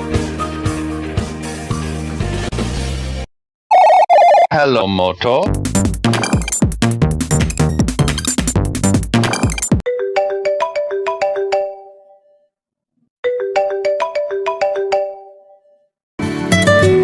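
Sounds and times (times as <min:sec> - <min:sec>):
mobile phone ringtone melody: 0:03.7 - 0:04.5, 0:09.9 - 0:12.4, 0:13.3 - 0:15.8.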